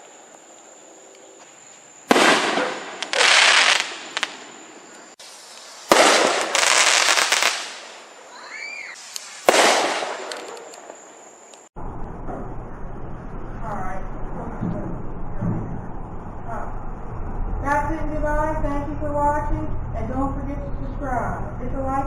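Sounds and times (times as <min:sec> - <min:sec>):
firework whistle: 0:02.1 - 0:04.4, 0:05.1 - 0:11.0
fireworks bangs with crackle: 0:02.1 - 0:08.1, 0:08.9 - 0:11.1.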